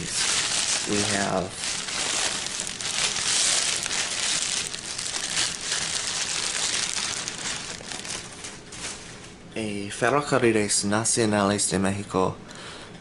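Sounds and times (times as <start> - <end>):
packaging crinkling: 0.0 - 9.4.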